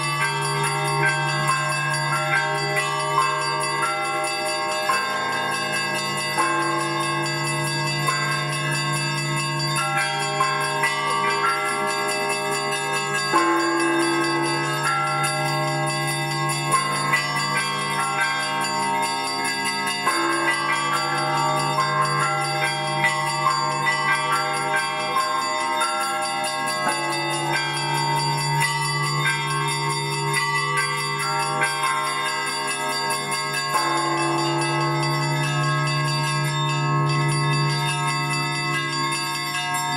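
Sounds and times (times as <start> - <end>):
small church bells ringing: 0.0 - 39.9.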